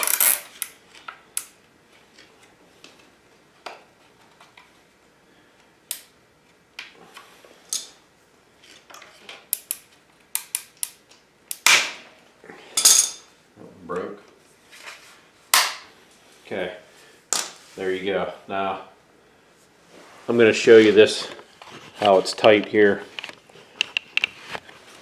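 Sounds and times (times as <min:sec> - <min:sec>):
zip tie clicking and scraping: 0:00.0 - 0:00.8
sharp snap: 0:05.9 - 0:06.1, 0:10.4 - 0:12.0.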